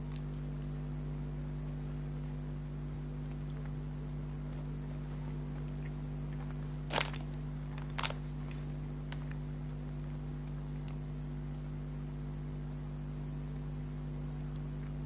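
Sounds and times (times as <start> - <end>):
biscuit bite crunches: 0.0 - 0.8, 4.3 - 11.0
steady low hum: 0.0 - 15.0.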